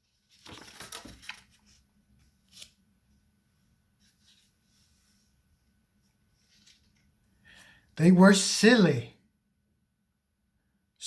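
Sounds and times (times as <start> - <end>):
soft rustle: 0.0 - 7.2
faint room hiss and hum: 0.0 - 11.0.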